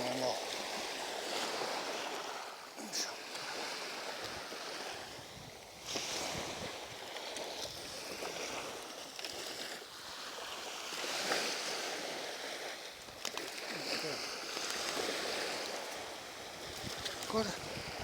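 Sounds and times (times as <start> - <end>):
sea waves washing onto shore: 0.0 - 18.0
wind rumbling on microphone: 3.7 - 8.9, 14.4 - 18.0.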